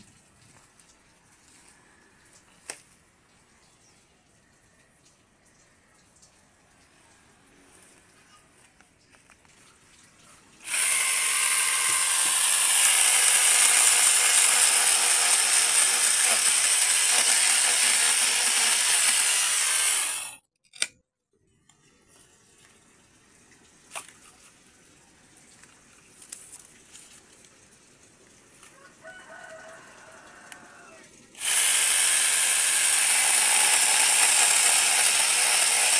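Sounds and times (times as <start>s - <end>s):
mini chainsaw running: 10.6s - 20.4s, 31.4s - 35.9s.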